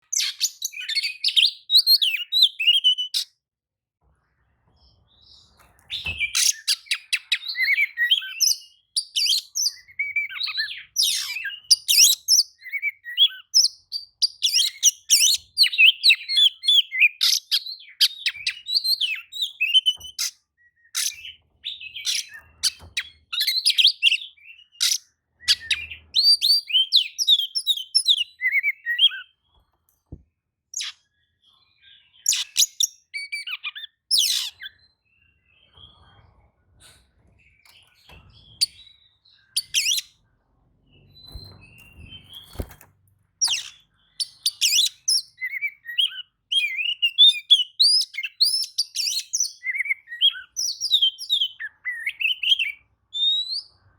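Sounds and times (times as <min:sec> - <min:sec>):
bird singing whistles and chirps: 0:00.1 - 0:03.3, 0:05.2 - 0:29.4, 0:30.8 - 0:35.0, 0:37.6 - 0:40.2, 0:40.9 - 0:53.9.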